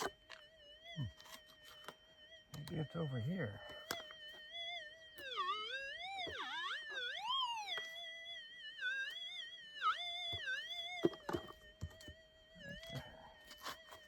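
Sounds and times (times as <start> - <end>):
metal detector tone: 1.0 - 4.4, 5.2 - 8.2, 8.8 - 14.0.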